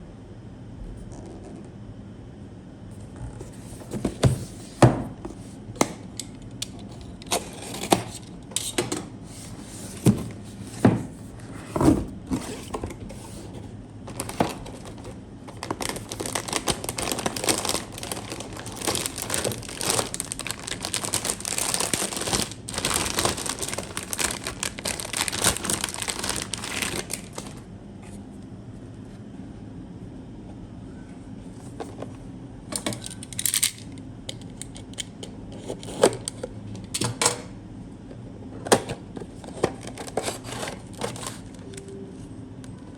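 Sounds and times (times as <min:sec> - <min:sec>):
plastic crinkling and tearing: 0:14.1 - 0:27.6, 0:39.5 - 0:41.6.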